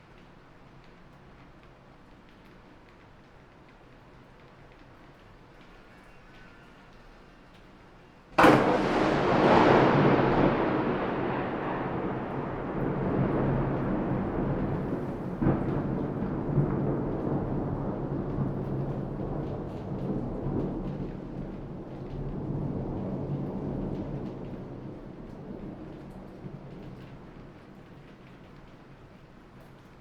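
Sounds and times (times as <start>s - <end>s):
faint steady rain: 0.0s - 30.0s
thunderclap: 8.4s - 28.3s
rumble of thunder: 8.4s - 28.8s.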